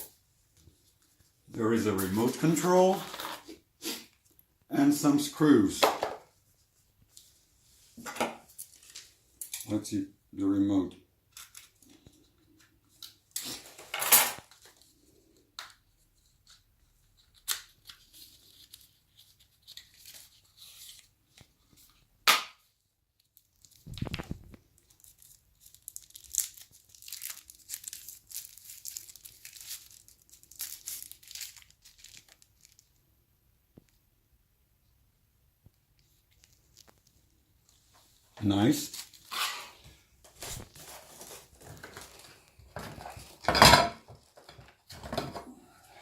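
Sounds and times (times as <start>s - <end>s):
packaging rustling and crinkling: 23.2s - 33.0s, 36.0s - 43.4s
packaging ripping: 23.4s - 32.9s.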